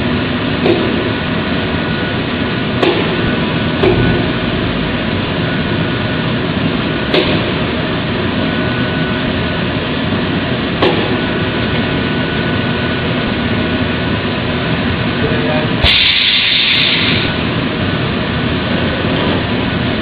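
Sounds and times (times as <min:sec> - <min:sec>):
welding machine mechanical noise: 0:15.3 - 0:17.5.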